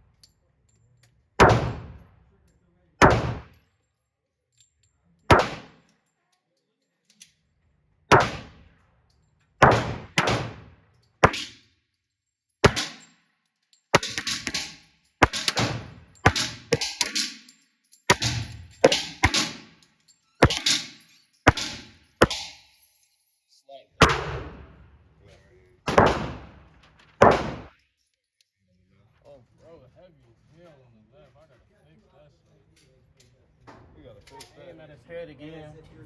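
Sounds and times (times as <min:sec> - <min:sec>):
pistol shots: 0:01.4 - 0:02.2, 0:03.0 - 0:03.6, 0:05.3 - 0:05.9, 0:08.1 - 0:08.7, 0:09.6 - 0:11.6, 0:12.6 - 0:13.1, 0:14.0 - 0:17.4, 0:18.1 - 0:19.8, 0:20.4 - 0:22.6, 0:24.0 - 0:25.0, 0:25.9 - 0:27.8.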